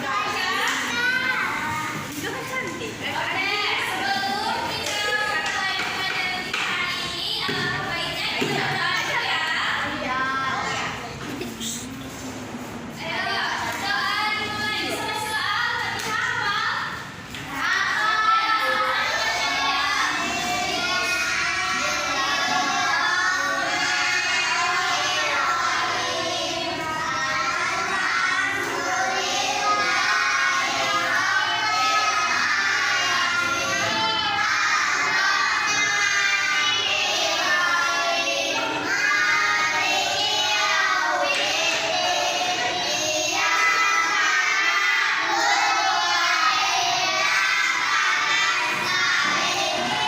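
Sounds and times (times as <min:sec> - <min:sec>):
children singing: 0:17.5 - 0:50.0.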